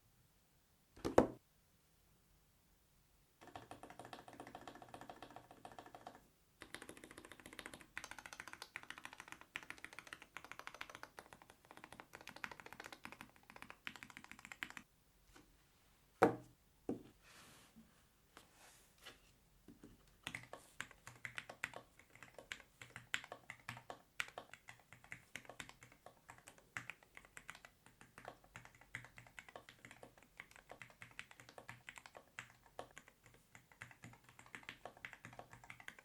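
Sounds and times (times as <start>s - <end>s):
fast typing on mechanical keyboard: 3.4s - 14.9s, 20.2s - 36.0s.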